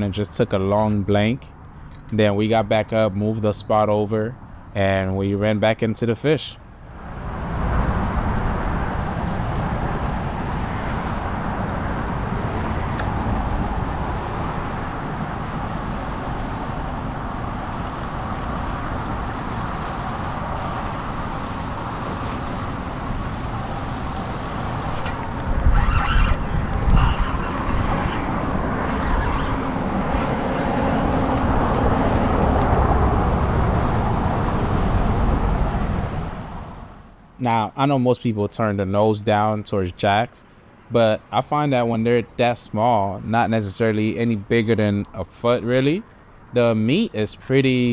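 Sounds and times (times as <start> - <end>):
road traffic rumbling: 0.0 - 47.9
wind rumble on microphone: 6.9 - 37.0.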